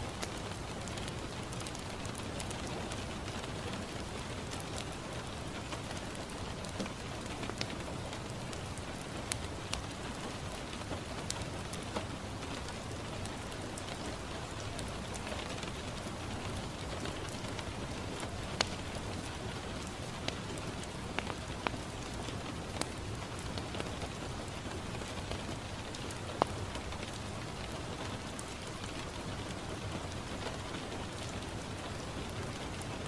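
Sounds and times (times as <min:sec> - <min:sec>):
rain falling on a window: 0:00.0 - 0:33.0
fireplace crackling: 0:08.5 - 0:23.7.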